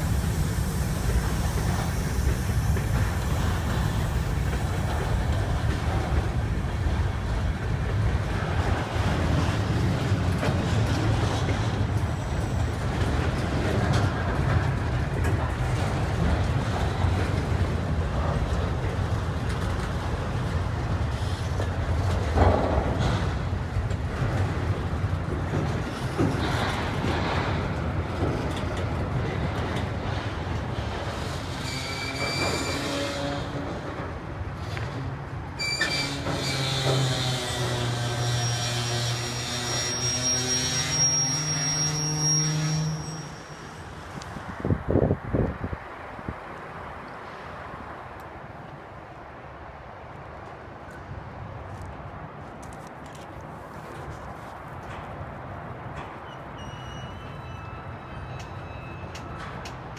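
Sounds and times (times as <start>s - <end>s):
train wheel squeal: 0.0s - 5.5s, 11.2s - 14.7s, 30.8s - 34.0s, 35.6s - 44.4s, 56.0s - 59.9s
freight train rumbling on track: 0.0s - 59.9s.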